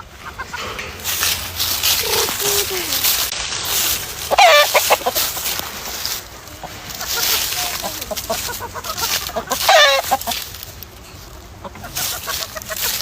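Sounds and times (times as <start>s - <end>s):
chickens clucking: 0.0s - 13.0s
chicken calling loudly: 4.1s - 5.5s, 6.5s - 10.5s.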